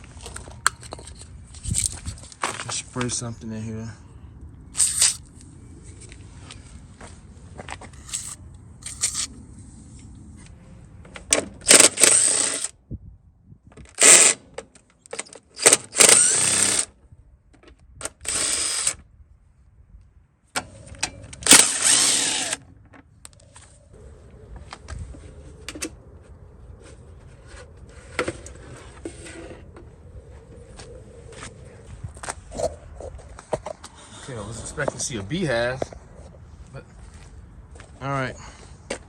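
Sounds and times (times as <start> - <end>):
handheld power tool running: 11.7 - 12.7, 14.0 - 14.4, 15.6 - 16.9, 18.2 - 19.0, 21.4 - 22.6.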